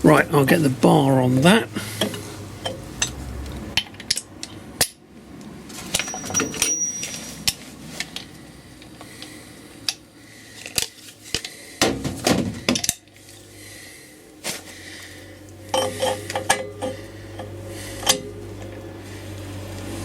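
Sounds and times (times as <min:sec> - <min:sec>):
metal tools clinking and knocking: 0:05.9 - 0:07.6, 0:15.7 - 0:18.7.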